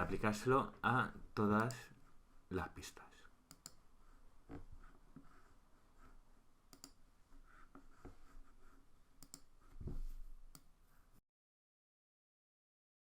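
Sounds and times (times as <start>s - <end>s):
computer mouse clicks: 1.6s - 1.8s, 3.5s - 3.8s, 6.7s - 7.0s, 9.2s - 9.5s, 10.5s - 10.7s.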